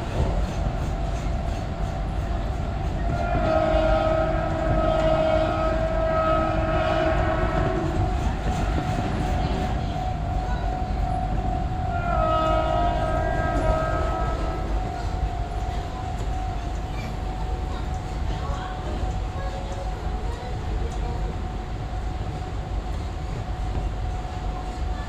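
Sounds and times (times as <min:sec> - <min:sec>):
train rumbling: 0:00.0 - 0:25.0
train horn blasts: 0:02.8 - 0:18.2.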